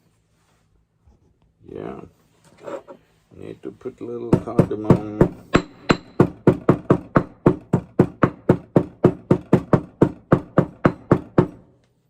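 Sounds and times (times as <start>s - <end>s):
spice being pounded: 4.3s - 11.6s.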